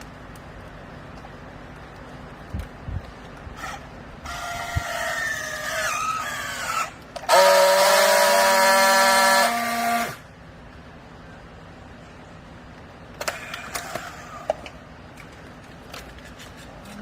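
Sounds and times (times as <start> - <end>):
hydraulic baler whining: 3.6 - 10.3.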